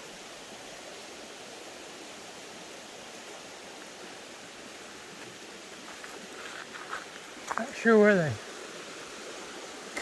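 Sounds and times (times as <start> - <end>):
creek water running: 0.0 - 10.0.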